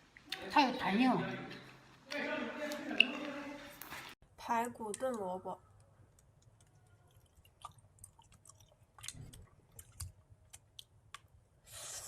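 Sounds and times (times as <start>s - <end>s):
close-miked chewing: 6.1s - 11.3s.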